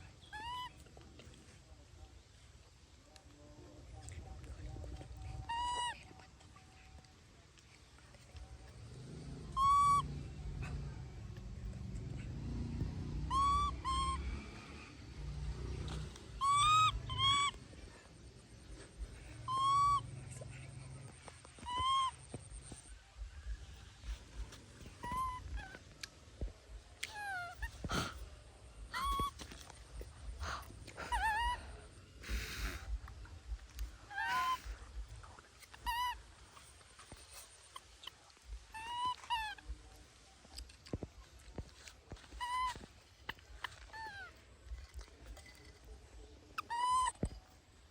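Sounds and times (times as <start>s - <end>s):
baby monkey cooing: 0.1s - 0.8s, 5.0s - 6.2s, 9.4s - 10.7s, 13.2s - 14.8s, 15.6s - 17.9s, 18.5s - 20.4s, 21.5s - 22.8s, 24.8s - 26.0s, 27.0s - 28.2s, 28.8s - 33.0s, 33.7s - 40.0s, 42.3s - 45.6s, 46.5s - 47.6s.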